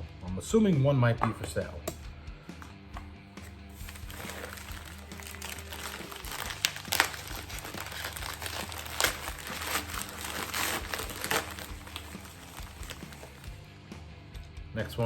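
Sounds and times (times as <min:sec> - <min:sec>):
packaging crinkling: 0:03.7 - 0:13.6.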